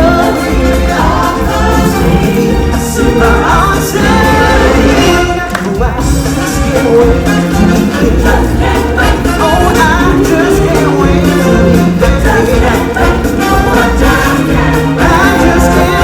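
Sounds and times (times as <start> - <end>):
group of voices singing: 0.0 - 16.0
steady bass line: 0.0 - 16.0.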